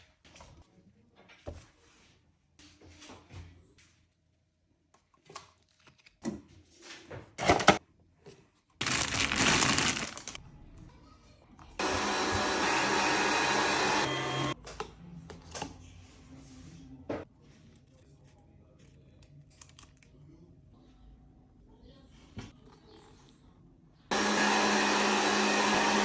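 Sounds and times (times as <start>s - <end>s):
kitchen motor running: 11.8s - 14.6s, 24.1s - 26.0s.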